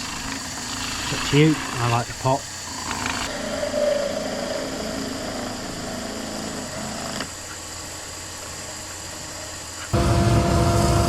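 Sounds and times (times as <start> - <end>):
lathe tool cutting wood: 0.0 - 3.3
lathe motor hum: 0.0 - 11.0.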